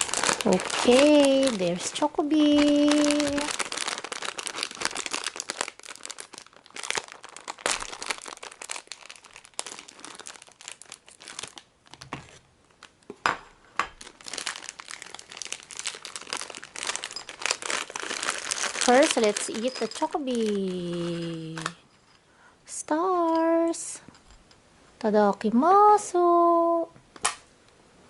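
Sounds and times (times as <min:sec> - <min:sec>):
snack packaging crinkling: 0:00.0 - 0:13.1, 0:14.0 - 0:21.9.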